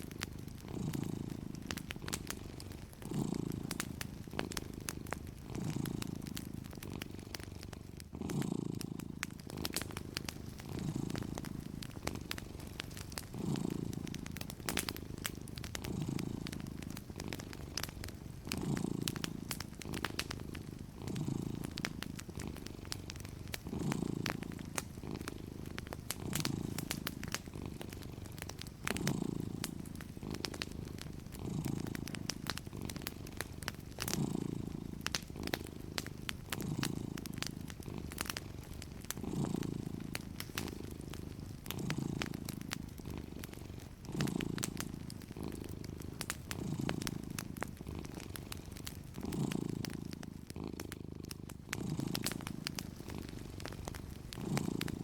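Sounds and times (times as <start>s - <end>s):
cat purring: 0.0s - 55.0s
wood fire crackling and popping: 0.0s - 55.0s.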